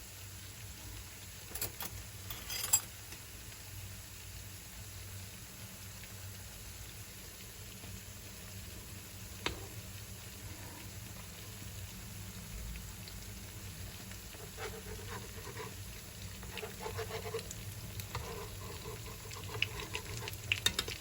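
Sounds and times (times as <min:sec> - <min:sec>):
batter sizzling in hot oil: 0:00.0 - 0:21.0
oil crackling and popping: 0:07.6 - 0:21.0.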